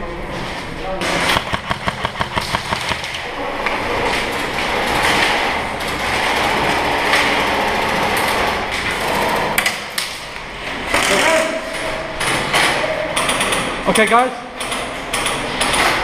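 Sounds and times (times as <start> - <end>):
airsoft guns firing: 1.0 - 3.3.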